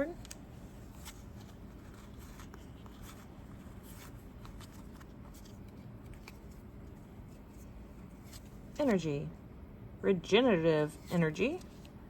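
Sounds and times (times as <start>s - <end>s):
trading cards rustling: 0.0s - 9.1s
low steady hum: 0.0s - 12.0s.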